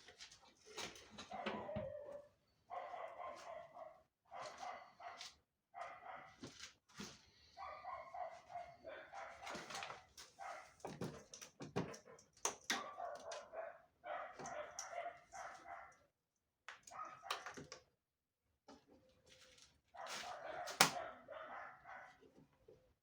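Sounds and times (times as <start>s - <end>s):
dog barking: 1.2s - 6.5s, 7.6s - 10.8s, 12.6s - 16.1s, 16.9s - 17.6s, 19.9s - 22.3s.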